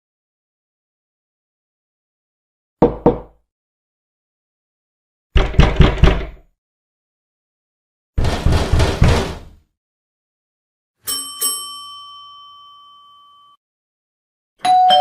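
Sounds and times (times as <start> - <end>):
knocking on wooden door: 2.8 - 3.3, 5.4 - 6.4, 8.2 - 9.6.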